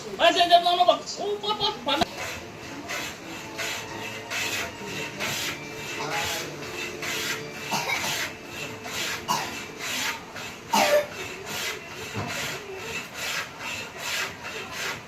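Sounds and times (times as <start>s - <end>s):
hand tool rasping on laminate: 2.0s - 15.0s.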